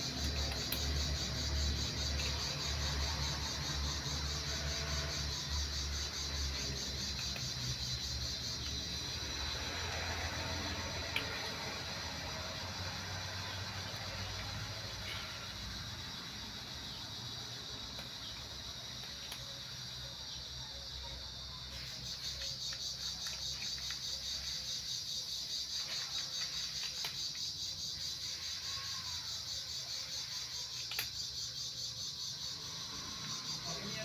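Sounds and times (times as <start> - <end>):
insect chirring: 0.0 - 34.0
faint clicks: 30.7 - 31.3.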